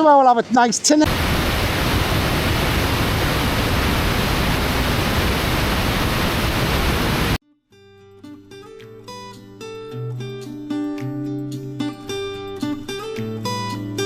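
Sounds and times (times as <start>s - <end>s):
waterfall rushing: 1.0s - 7.4s.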